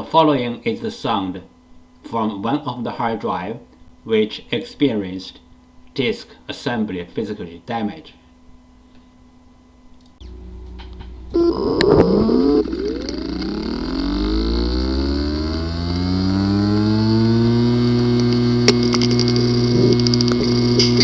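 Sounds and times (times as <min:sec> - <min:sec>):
hard drive buzzing: 0:10.2 - 0:21.0
hard drive motor whining: 0:10.2 - 0:21.0
hard drive ticking: 0:10.2 - 0:21.0.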